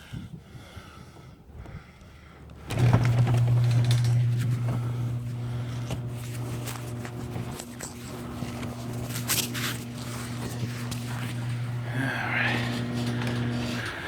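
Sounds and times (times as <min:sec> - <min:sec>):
low electrical hum: 0:00.1 - 0:14.0
footsteps and scuffing: 0:05.8 - 0:11.7.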